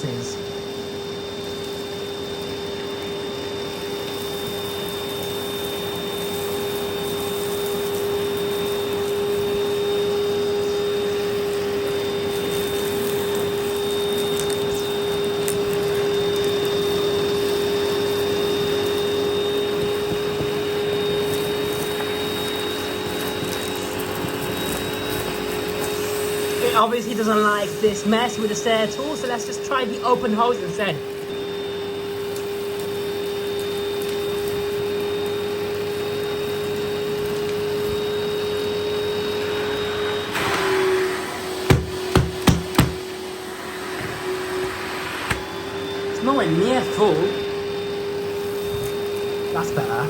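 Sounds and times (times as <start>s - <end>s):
vacuum cleaner motor whine: 0.0s - 50.0s.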